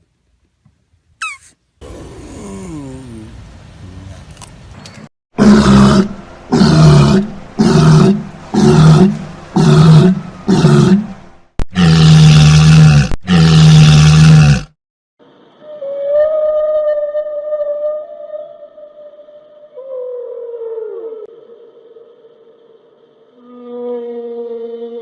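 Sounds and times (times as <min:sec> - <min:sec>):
animal calling loudly: 0:01.2 - 0:03.3.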